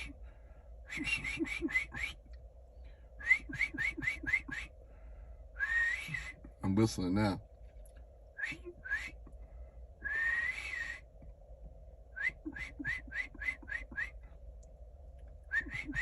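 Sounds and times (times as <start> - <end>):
person whistling: 0.9 - 2.2, 3.2 - 4.7, 5.6 - 6.4, 8.4 - 9.3, 10.0 - 11.0, 12.2 - 14.2, 15.5 - 16.0.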